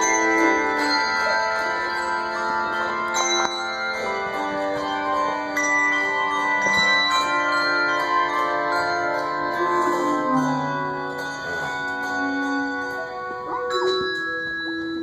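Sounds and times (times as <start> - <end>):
handbell choir ringing chords: 0.0 - 15.0.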